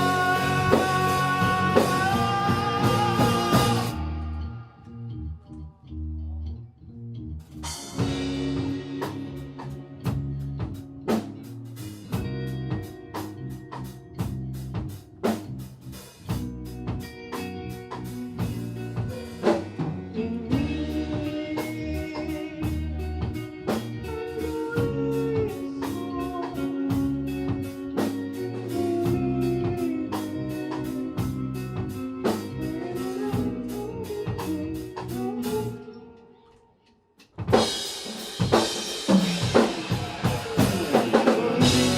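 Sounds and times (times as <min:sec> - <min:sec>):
drum kit: 0:00.0 - 0:04.4, 0:07.5 - 0:35.7, 0:37.2 - 0:41.9
bass guitar: 0:00.0 - 0:36.2, 0:37.2 - 0:41.9
electric guitars: 0:00.0 - 0:36.6, 0:37.4 - 0:41.9.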